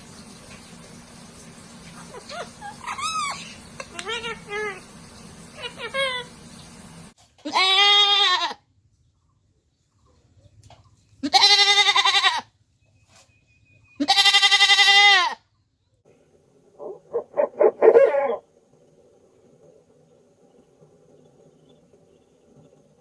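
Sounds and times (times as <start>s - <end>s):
goat bleating: 7.4s - 8.6s, 11.2s - 12.5s, 14.0s - 15.4s.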